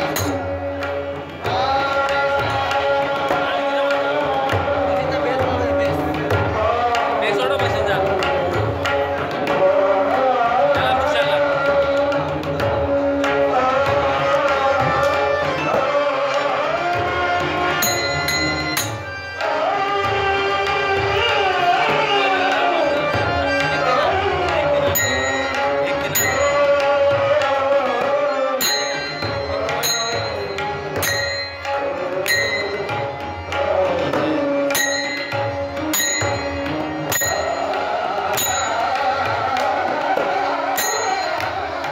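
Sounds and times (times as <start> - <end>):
sharp metallic strikes: 0.0 - 0.6
tabla playing: 0.0 - 41.9.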